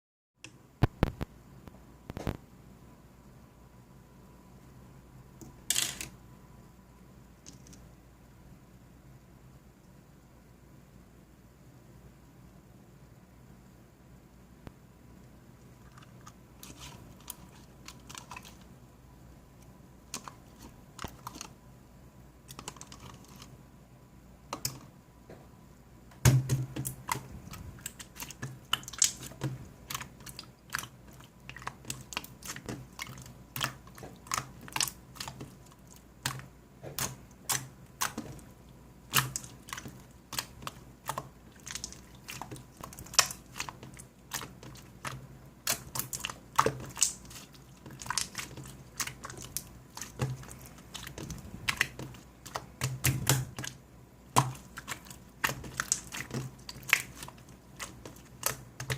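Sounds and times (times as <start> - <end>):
slime clicking and popping: 39.1 - 58.9.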